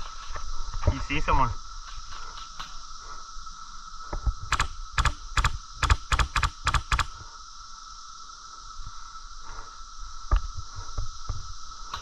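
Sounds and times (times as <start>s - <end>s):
sharp clicks: 4.5s - 7.2s.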